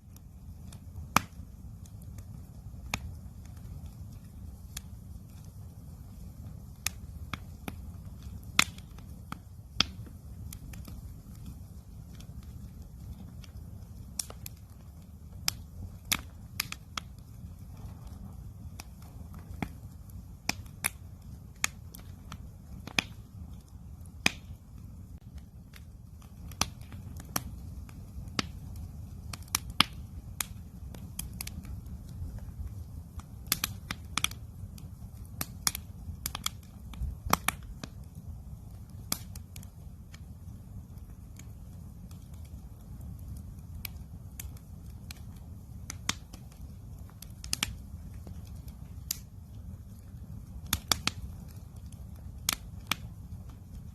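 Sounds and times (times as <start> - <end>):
campfire crackling and popping: 0.0 - 53.9.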